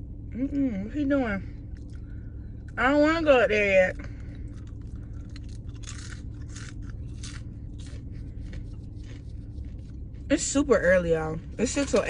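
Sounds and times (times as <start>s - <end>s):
low hum: 0.0s - 12.0s
rustling scraping noises: 8.1s - 11.0s.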